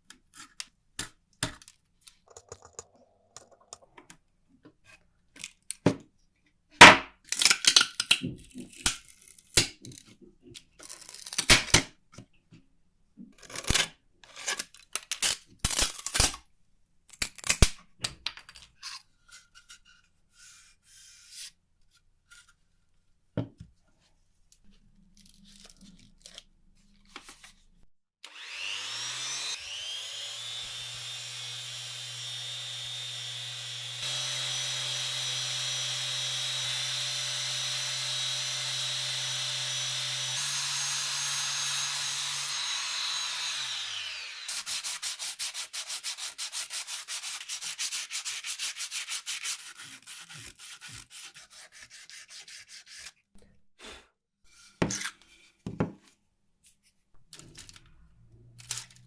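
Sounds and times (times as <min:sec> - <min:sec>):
small electric motor whine: 0:28.2 - 0:44.6.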